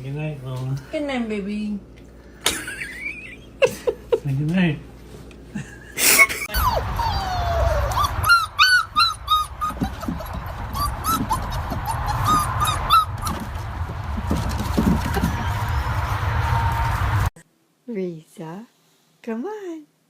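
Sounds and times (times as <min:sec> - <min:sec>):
dog whining and yipping: 0:06.5 - 0:13.5.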